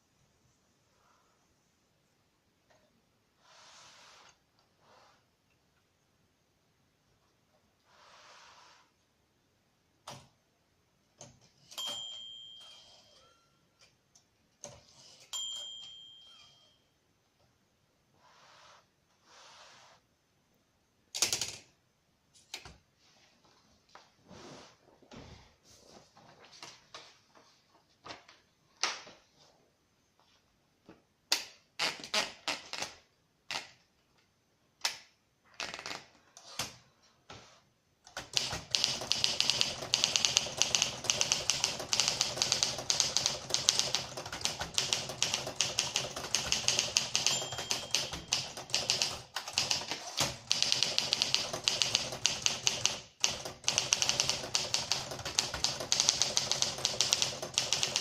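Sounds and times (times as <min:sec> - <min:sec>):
manual typewriter typing: 0:38.1 - 0:58.0.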